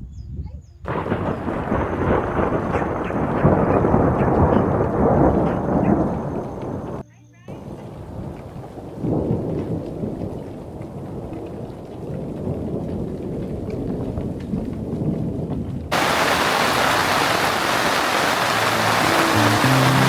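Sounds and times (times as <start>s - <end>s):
thunder rumbling: 0.9s - 7.0s, 7.6s - 20.0s
heavy rain hissing: 15.9s - 20.0s.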